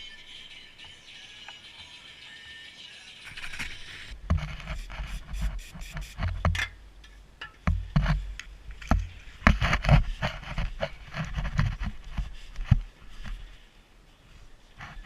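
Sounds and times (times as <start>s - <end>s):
clicks knocks and scrapes: 3.4s - 6.7s, 7.6s - 13.4s.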